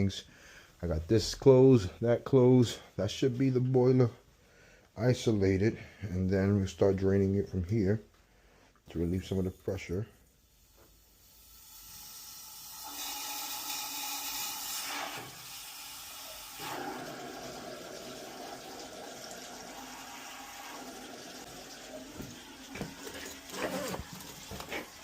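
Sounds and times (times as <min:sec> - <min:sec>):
water rushing from boiler: 0:11.0 - 0:25.0.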